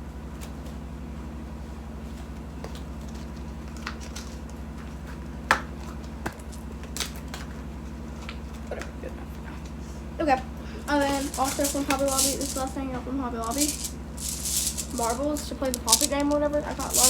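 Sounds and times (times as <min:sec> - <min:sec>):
fidget toys clicking: 0:11.0 - 0:12.7, 0:13.4 - 0:17.0.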